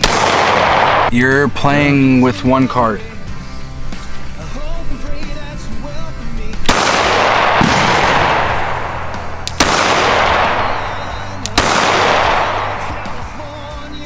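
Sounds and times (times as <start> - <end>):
pistol shots with echo: 0.0 - 1.1, 6.6 - 13.5.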